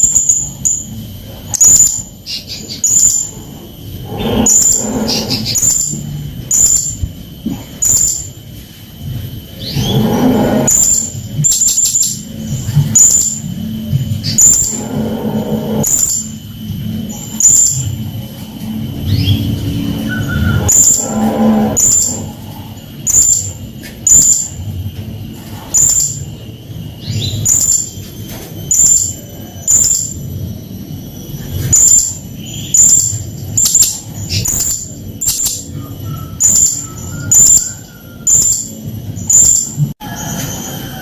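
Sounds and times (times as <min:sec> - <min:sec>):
low background rumble: 0:00.0 - 0:41.0.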